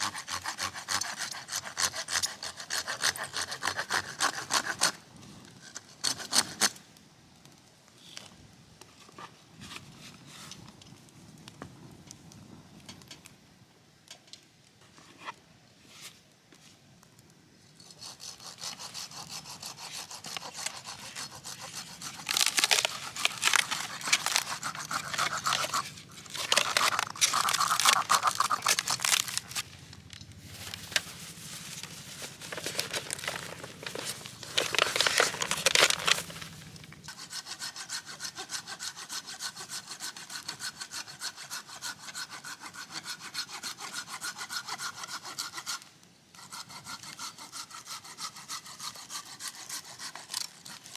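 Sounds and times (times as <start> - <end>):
saw cutting firewood: 0.0 - 5.0, 17.8 - 29.9, 30.5 - 50.9.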